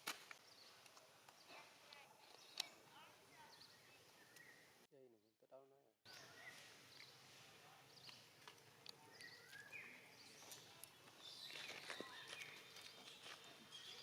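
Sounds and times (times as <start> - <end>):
small animals chirping and squeaking: 8.8 - 14.0.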